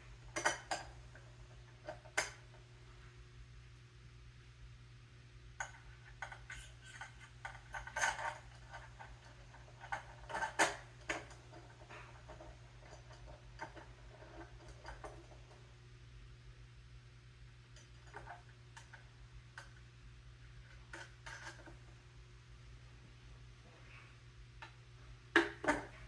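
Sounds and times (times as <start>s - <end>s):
low steady hum: 0.0s - 26.0s
clicks and knocks of handling: 0.3s - 2.6s, 5.6s - 15.6s, 20.6s - 21.9s.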